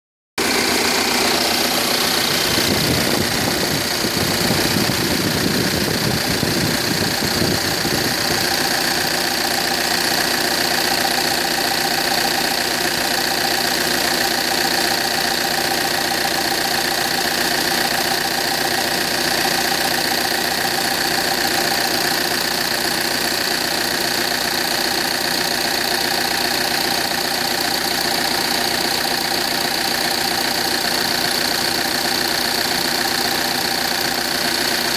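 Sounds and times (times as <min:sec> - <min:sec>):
diesel engine idling: 0:00.4 - 0:34.9.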